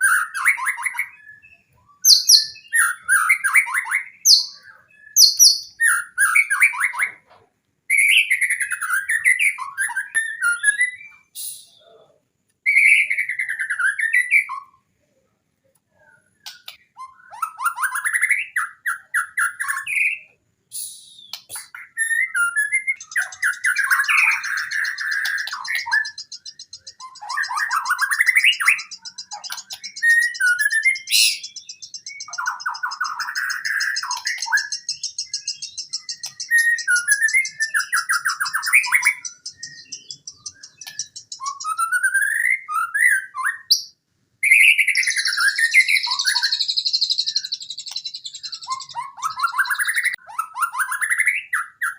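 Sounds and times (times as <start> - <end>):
bird singing whistled phrases: 0.0 - 7.2, 7.9 - 14.8, 16.0 - 51.9.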